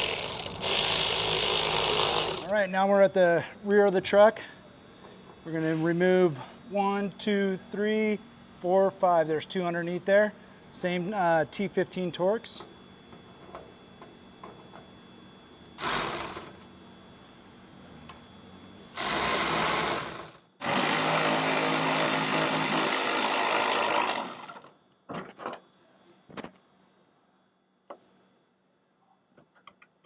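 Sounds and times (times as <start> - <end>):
power driver spinning screws: 0.0 - 2.5, 15.8 - 16.5, 19.0 - 24.7.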